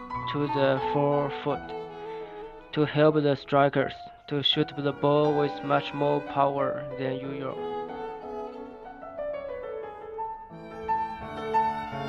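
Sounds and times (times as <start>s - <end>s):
piano: 0.0s - 12.0s
violin melody: 0.0s - 12.0s.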